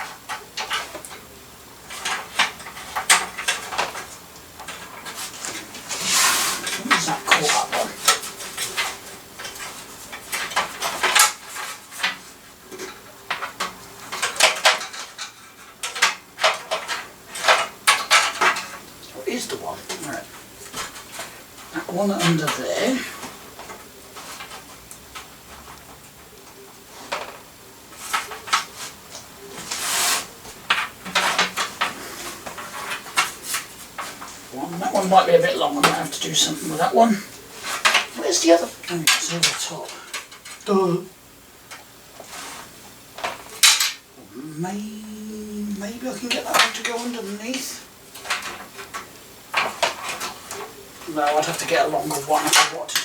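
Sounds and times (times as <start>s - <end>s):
rustling scrape: 1.8s - 25.8s, 26.8s - 40.7s, 42.1s - 43.8s.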